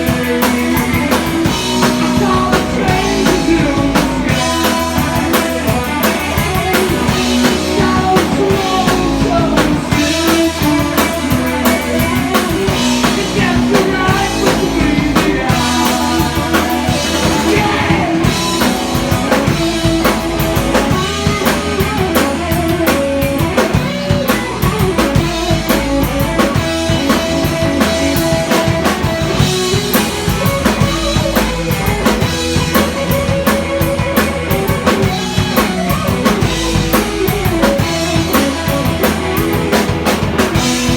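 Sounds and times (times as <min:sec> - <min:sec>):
electric guitar: 0:00.0 - 0:40.9
heavy metal band playing live: 0:00.0 - 0:40.9
pounding drum kit: 0:00.0 - 0:40.9
person singing: 0:01.7 - 0:20.2.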